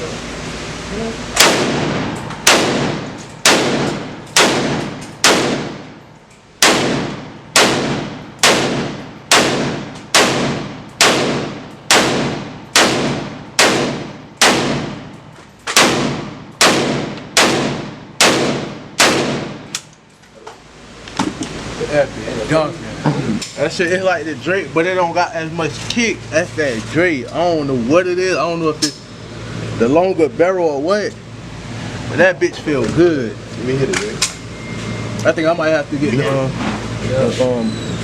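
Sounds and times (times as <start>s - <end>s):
pistol shots echoing indoors: 1.4s - 5.9s, 6.6s - 19.8s.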